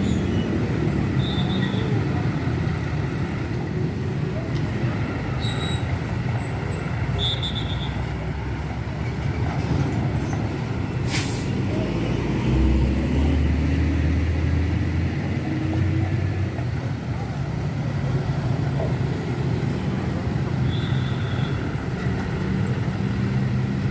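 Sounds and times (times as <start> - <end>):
trucks and buses passing: 0.0 - 23.9
short hiss: 11.0 - 11.6.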